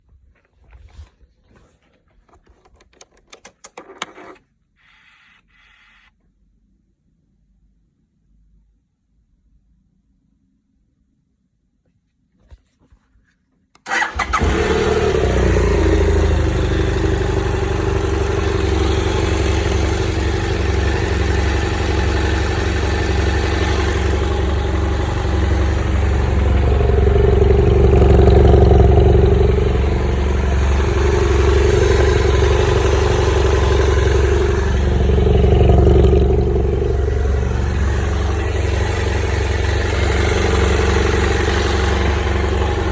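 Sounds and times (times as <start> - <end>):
motorcycle engine starting: 13.8 - 42.9
motorcycle engine idling: 13.9 - 42.9.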